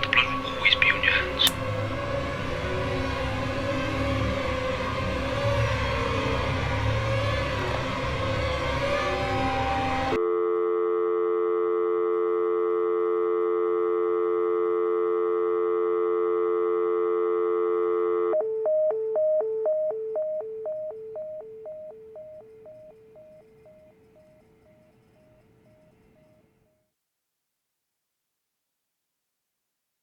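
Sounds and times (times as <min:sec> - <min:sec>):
telephone dial tone: 0:00.0 - 0:01.7, 0:09.4 - 0:24.9
rapidly pulsing busy tone: 0:00.0 - 0:01.8, 0:18.1 - 0:26.7
noisy background sound: 0:00.0 - 0:02.0.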